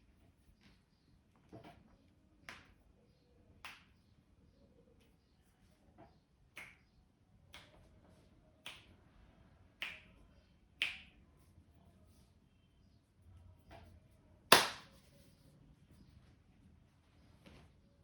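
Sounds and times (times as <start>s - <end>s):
sharp hand snaps: 3.6s - 3.9s, 6.6s - 6.8s, 8.6s - 8.9s, 9.8s - 10.1s, 10.8s - 11.1s, 14.5s - 14.9s.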